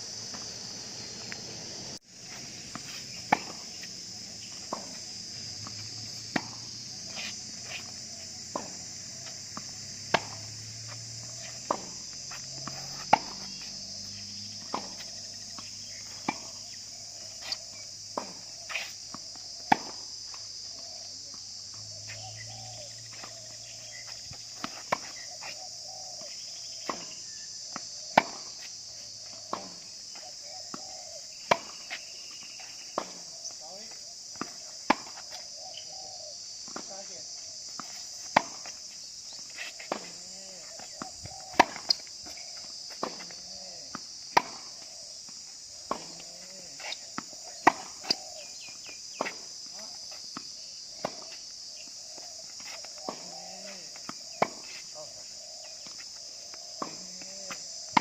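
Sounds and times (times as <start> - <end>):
high-pitched insect chorus: 0.0 - 58.0
tennis ball struck by rackets: 2.7 - 3.9, 5.6 - 8.9, 9.6 - 15.1, 16.1 - 16.6, 18.2 - 20.0, 26.8 - 28.6, 29.5 - 29.8, 31.4 - 31.8, 33.0 - 33.2, 34.4 - 35.3, 37.8 - 38.7, 39.6 - 44.8, 45.9 - 48.2, 51.0 - 51.3, 52.6 - 54.8, 56.7 - 58.0.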